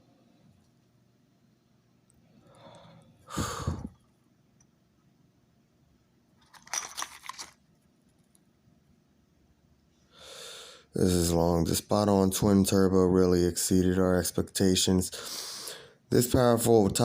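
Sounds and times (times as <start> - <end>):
plastic packaging crinkling: 6.4 - 7.7.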